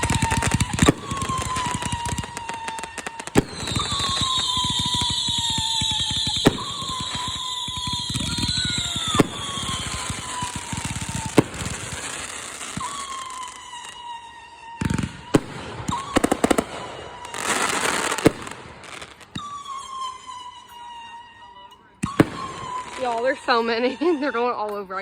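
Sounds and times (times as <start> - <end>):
falling firework whistles: 0.0 - 24.5
firework bangs: 0.0 - 24.5
firework crackling: 0.0 - 24.6.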